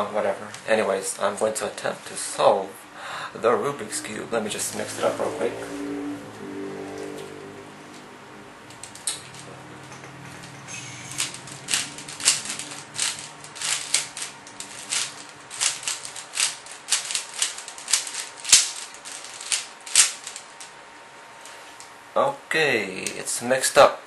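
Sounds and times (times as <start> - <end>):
plastic puzzle cube clacking: 11.1 - 20.5.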